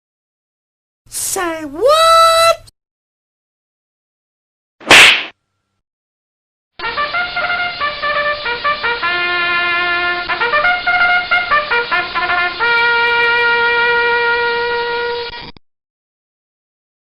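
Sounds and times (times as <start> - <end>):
trumpet playing a short tune: 6.8 - 15.4.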